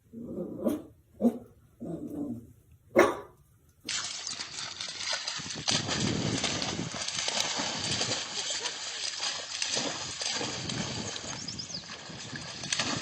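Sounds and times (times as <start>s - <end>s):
dog barking: 2.9s - 3.4s.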